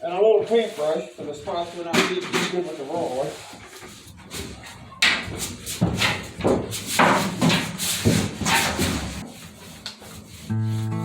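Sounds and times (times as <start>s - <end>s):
rough rubbing strokes on steel: 2.6s - 10.9s.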